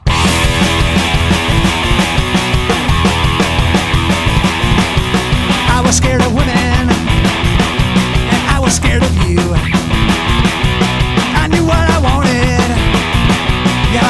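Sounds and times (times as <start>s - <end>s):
punk rock music: 0.0s - 14.0s
person singing: 5.5s - 7.6s, 8.2s - 9.8s, 11.2s - 13.0s.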